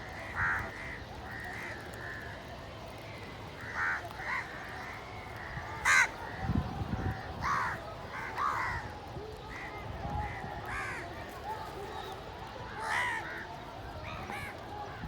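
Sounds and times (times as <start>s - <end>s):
crows cawing: 0.1s - 2.4s, 3.6s - 6.4s, 7.1s - 8.9s, 9.5s - 11.0s, 12.8s - 13.5s.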